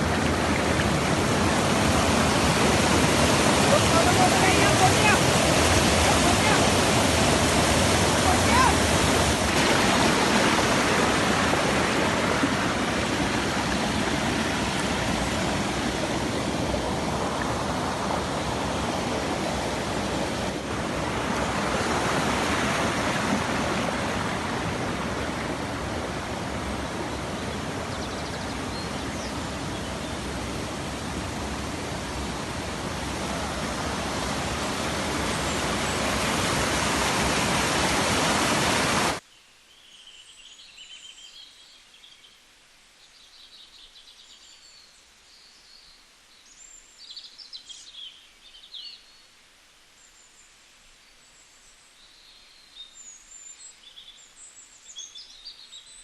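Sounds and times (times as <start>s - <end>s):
waterfall roaring: 0.0s - 39.2s.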